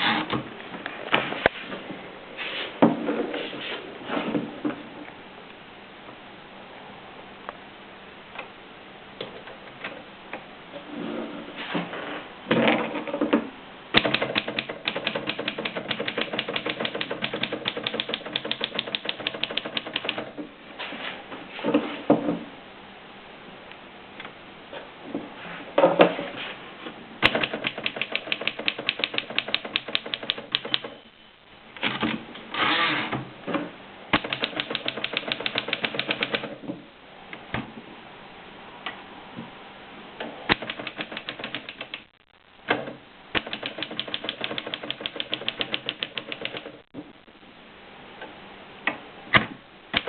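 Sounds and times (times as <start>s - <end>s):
typewriter typing: 14.0s - 20.3s, 27.2s - 31.0s, 34.2s - 36.6s, 40.5s - 42.2s, 43.4s - 46.9s.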